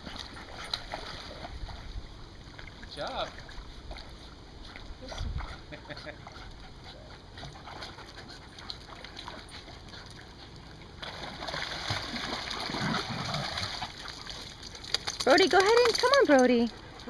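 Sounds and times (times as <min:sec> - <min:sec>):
water splashing from dog swimming: 0:00.0 - 0:05.7, 0:07.4 - 0:16.3.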